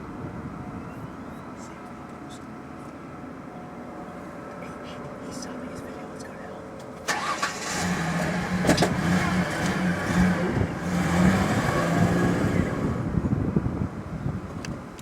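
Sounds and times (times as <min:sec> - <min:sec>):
vehicle engine running: 0:03.6 - 0:14.5.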